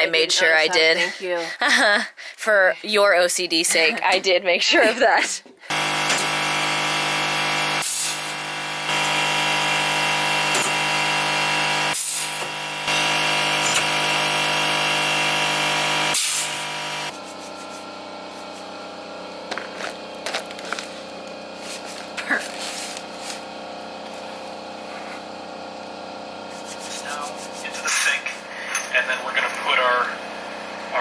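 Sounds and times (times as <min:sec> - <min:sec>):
power saw cutting wood: 0:05.6 - 0:25.5, 0:26.1 - 0:29.0.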